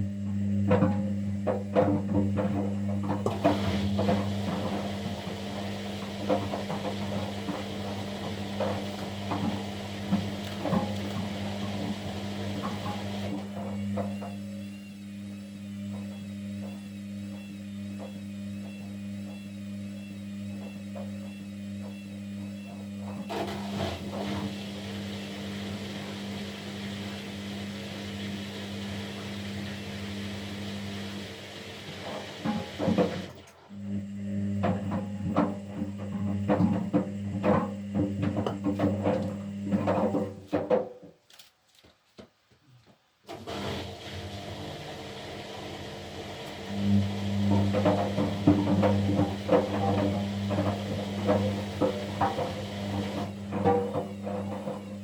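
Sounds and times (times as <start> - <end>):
washing machine motor hum: 0.0 - 40.5, 43.3 - 55.0
drum knocking and clatter: 34.6 - 41.2, 47.5 - 54.9.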